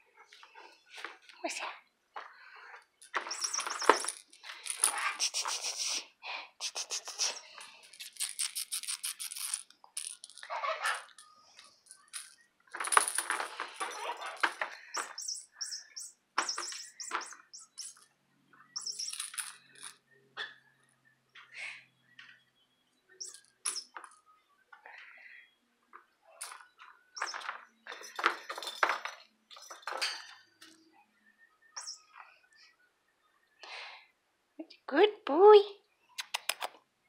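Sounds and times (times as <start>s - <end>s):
toy clicking and rustling: 3.0s - 6.0s, 6.6s - 18.1s, 18.8s - 20.0s, 23.2s - 24.2s, 26.4s - 30.8s, 31.8s - 32.1s.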